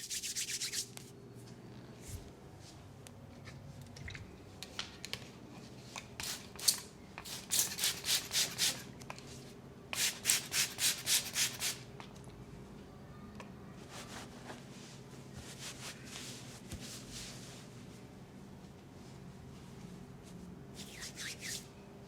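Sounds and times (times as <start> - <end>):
hands rubbing: 0.0 - 1.0.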